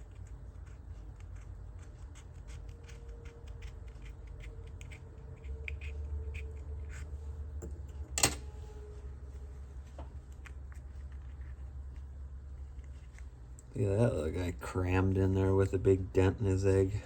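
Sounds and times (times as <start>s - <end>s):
scissors cutting egg shell: 0.0s - 7.1s
low steady hum: 0.0s - 17.0s.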